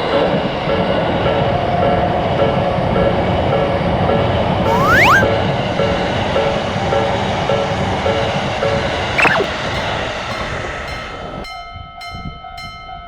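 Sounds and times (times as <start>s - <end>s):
falling squeal: 4.7s - 5.3s, 9.2s - 9.5s.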